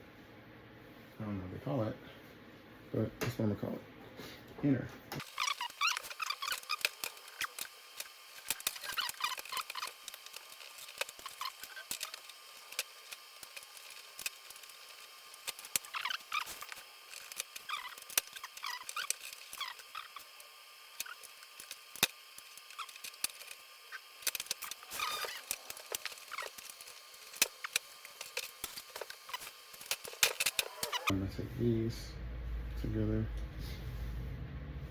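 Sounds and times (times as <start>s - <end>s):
plastic squeaks: 5.2s - 31.1s
plastic parts clicking: 24.2s - 31.1s.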